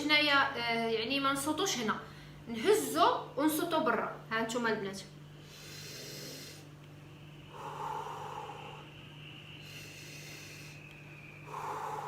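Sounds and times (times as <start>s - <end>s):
low hum: 0.0s - 12.0s
woman breathing deeply: 5.3s - 12.0s.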